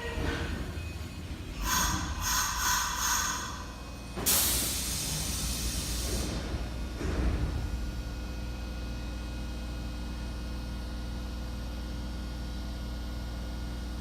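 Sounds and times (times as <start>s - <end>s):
compressed air hissing: 1.6s - 3.6s, 4.3s - 6.4s.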